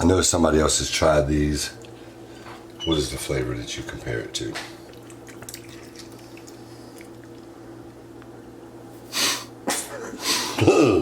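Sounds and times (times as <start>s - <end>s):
faint steady hum: 0.0s - 11.0s
person sneezing: 9.1s - 11.0s.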